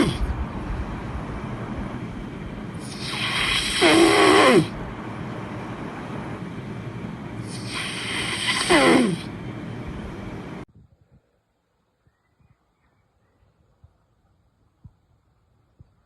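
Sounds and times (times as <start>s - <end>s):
person snoring heavily: 0.0s - 0.3s, 2.8s - 4.8s, 7.4s - 9.3s.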